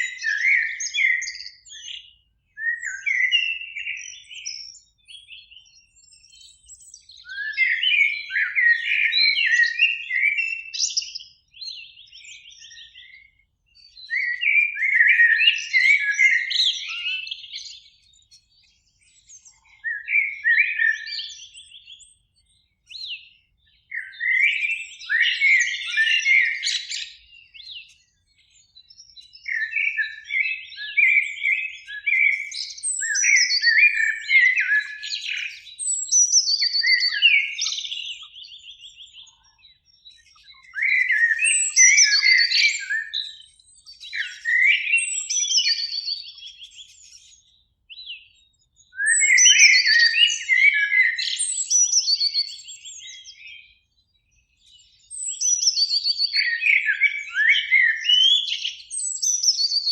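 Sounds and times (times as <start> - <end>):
blackbird singing: 0.0 - 59.9.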